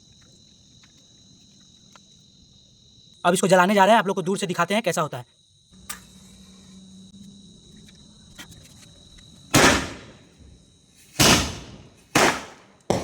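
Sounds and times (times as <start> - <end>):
firecracker bangs with echo: 9.5 - 10.2, 11.2 - 13.0.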